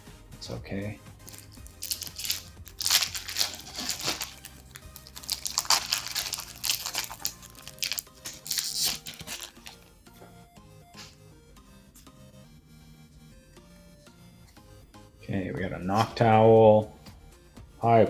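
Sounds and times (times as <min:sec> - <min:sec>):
background music: 0:00.0 - 0:18.0
foil wrapper tearing and crinkling: 0:01.3 - 0:09.8.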